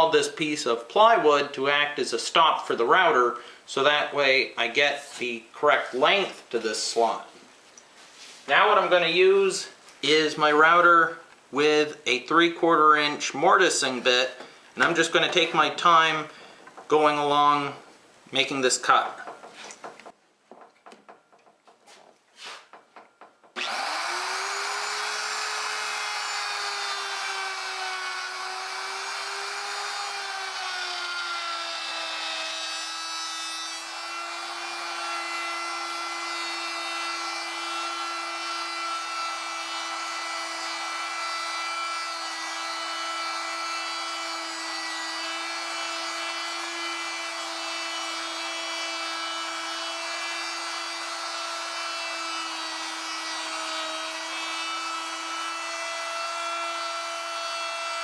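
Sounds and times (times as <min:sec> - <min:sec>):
electric router cutting wood: 0:23.6 - 0:58.0.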